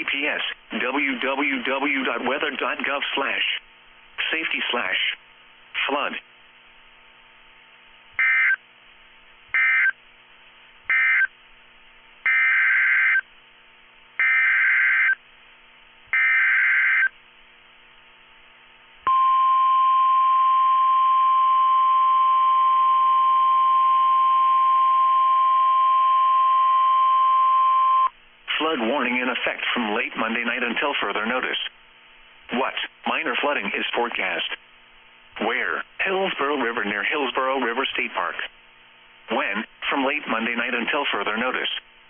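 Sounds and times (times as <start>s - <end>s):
steady attention tone: 19.0s - 29.4s.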